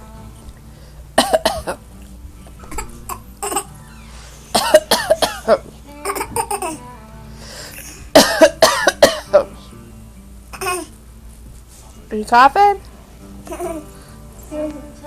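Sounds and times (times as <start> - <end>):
adult coughing: 1.2 - 1.8, 4.5 - 5.6, 8.1 - 9.5
child coughing: 1.2 - 1.8, 2.7 - 3.7, 4.5 - 6.8, 8.1 - 9.4, 10.6 - 10.9.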